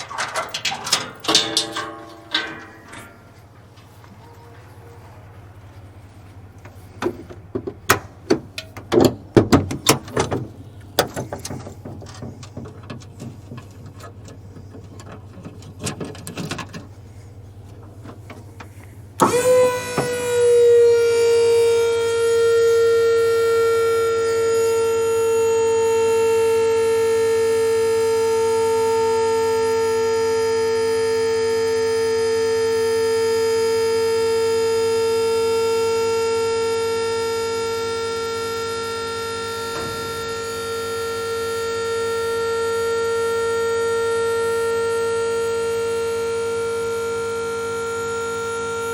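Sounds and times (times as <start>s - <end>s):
knocks and clatter: 0.0s - 3.9s
hydraulic pump whining: 0.0s - 48.9s.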